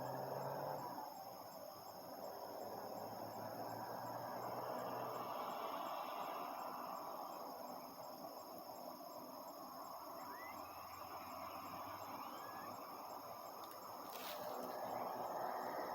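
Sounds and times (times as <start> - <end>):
insects trilling: 0.0 - 15.9
faint bird chirps: 10.0 - 13.8.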